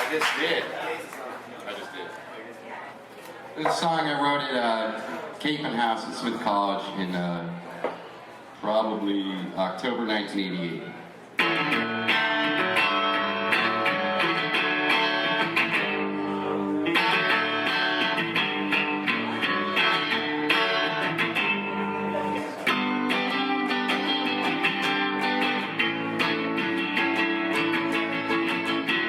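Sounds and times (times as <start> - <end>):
guitar strumming: 11.4 - 29.0.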